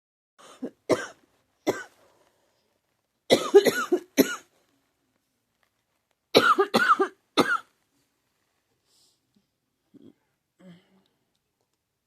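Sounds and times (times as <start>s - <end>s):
person coughing: 0.4s - 1.9s, 3.3s - 4.5s, 6.4s - 7.7s.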